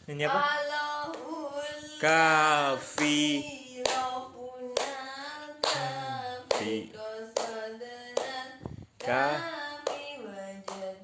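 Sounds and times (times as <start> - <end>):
voices singing a children's song: 0.2 - 11.0
hands clapping: 2.9 - 4.1, 4.8 - 5.0, 5.6 - 6.8, 9.0 - 10.1, 10.7 - 11.0.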